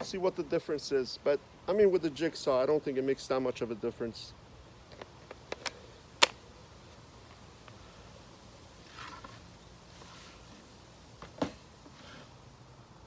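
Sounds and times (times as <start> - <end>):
handling scraping and rustling: 8.8 - 12.3.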